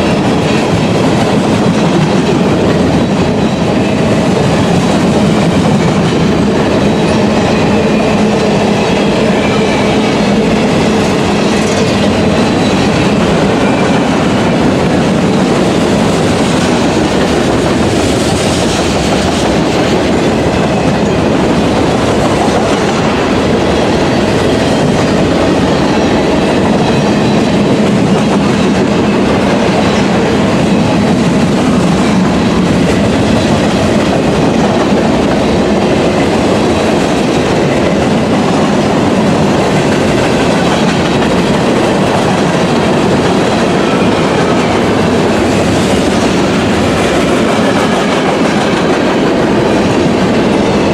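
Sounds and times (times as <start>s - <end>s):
train wheels on rails: 0.0s - 50.9s.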